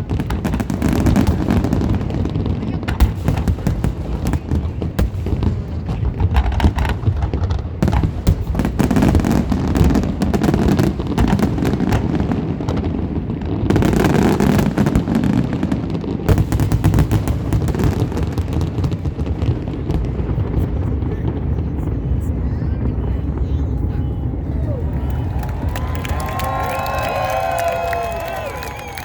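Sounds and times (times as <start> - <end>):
fireworks bursting: 0.0 - 29.0.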